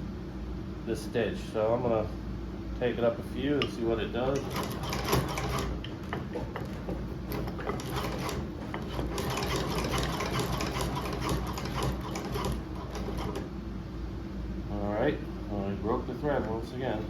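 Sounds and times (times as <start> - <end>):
sewing machine needle clattering: 4.3 - 13.5.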